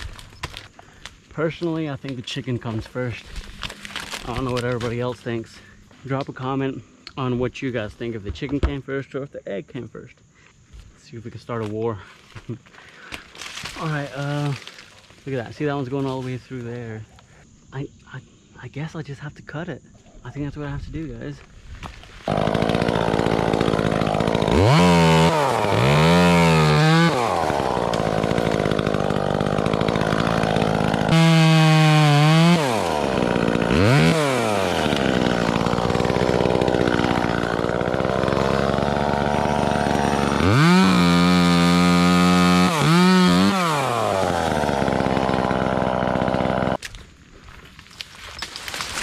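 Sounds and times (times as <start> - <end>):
chainsaw revving and cutting: 22.3 - 46.8.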